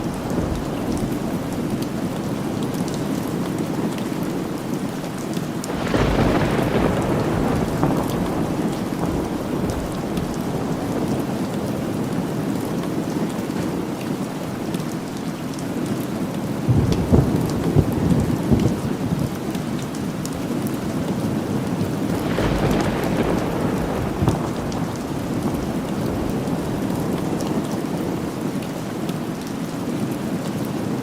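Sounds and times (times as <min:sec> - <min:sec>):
thunder rumbling: 0:00.0 - 0:04.7, 0:05.7 - 0:12.8, 0:16.6 - 0:29.0
steady rain falling: 0:00.0 - 0:31.0.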